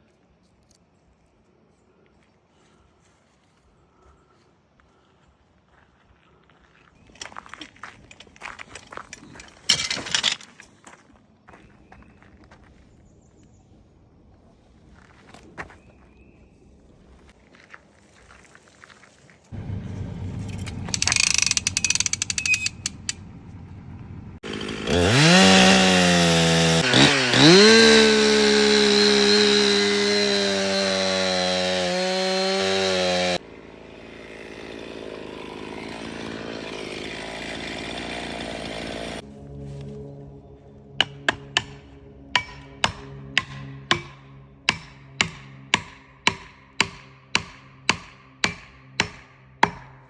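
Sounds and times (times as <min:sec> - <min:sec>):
chainsaw revving: 0:19.6 - 0:22.4, 0:24.4 - 0:39.2.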